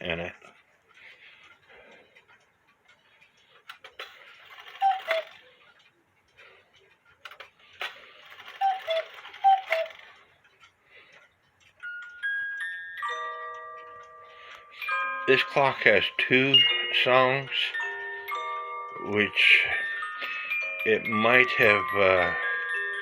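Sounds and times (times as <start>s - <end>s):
music box playing: 3.7s - 5.7s, 7.3s - 10.3s, 11.7s - 23.0s
two-note cuckoo call: 4.7s - 5.4s, 8.5s - 10.0s.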